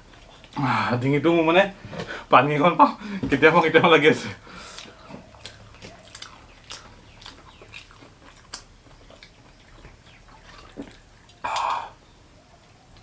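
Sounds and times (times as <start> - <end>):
person chewing crunchy snack: 4.5 - 12.0.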